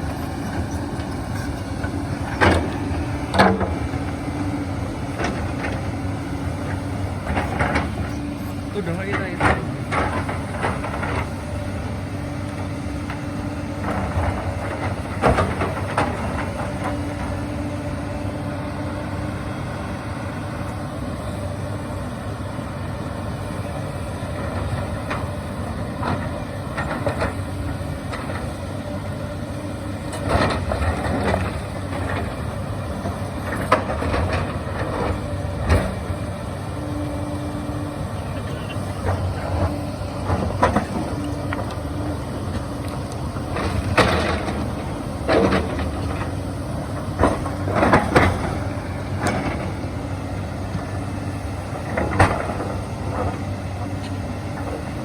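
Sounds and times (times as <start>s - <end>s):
excavator diesel engine running: 0.0s - 55.0s.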